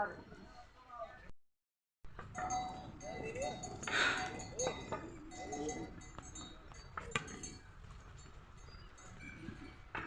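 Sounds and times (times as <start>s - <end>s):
small metal bells jingling: 2.2s - 10.0s.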